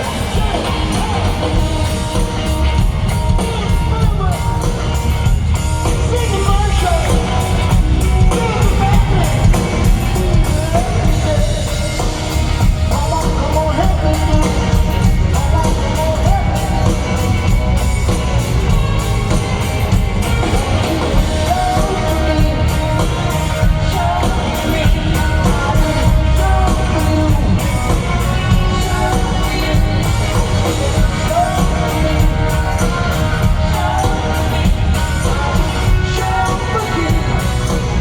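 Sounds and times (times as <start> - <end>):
heavy bass: 0.0 - 38.0
live rock band playing: 0.0 - 38.0
person singing: 0.0 - 38.0.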